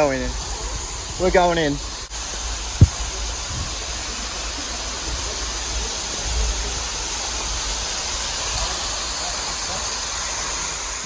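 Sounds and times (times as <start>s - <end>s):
waterfall hiss: 0.0s - 11.0s.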